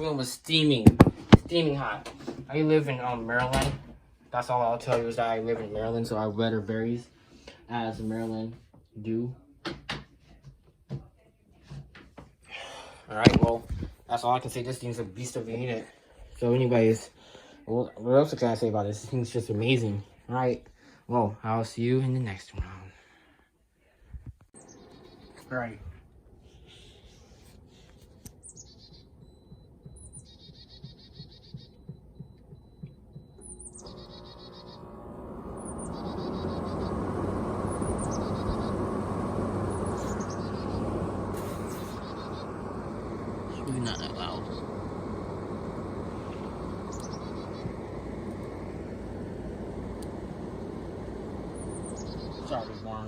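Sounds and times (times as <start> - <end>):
air conditioner fan drone: 0.0 - 8.4, 24.6 - 53.0
songbird whistle and trill: 28.3 - 35.0, 35.6 - 38.8, 39.7 - 41.0, 41.6 - 42.6, 46.2 - 48.6, 51.5 - 53.0
soft low thumps: 29.0 - 34.0.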